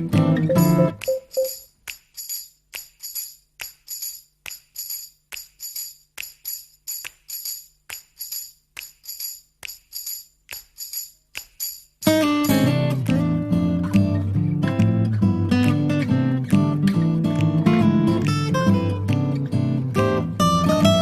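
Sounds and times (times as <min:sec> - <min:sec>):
tambourine jingles shaken: 0:00.9 - 0:13.2.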